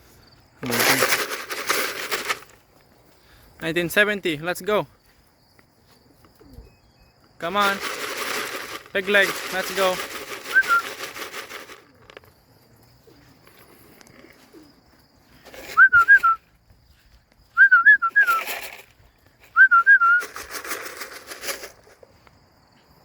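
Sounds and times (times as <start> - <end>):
rustling burst: 0.6 - 2.6, 7.4 - 12.0, 18.1 - 18.9, 19.8 - 22.0
person whistling warbling calls: 10.4 - 11.0, 15.7 - 16.4, 17.6 - 18.5, 19.5 - 20.4.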